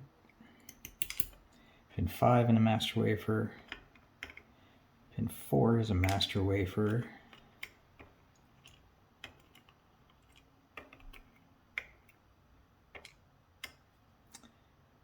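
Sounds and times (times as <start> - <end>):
small clicks of lock pins: 0.6 - 1.5, 3.7 - 4.5.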